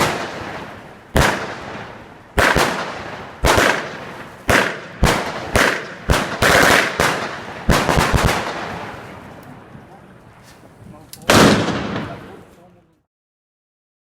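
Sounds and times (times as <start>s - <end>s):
firework bangs with hiss: 0.0s - 9.3s, 11.2s - 12.4s.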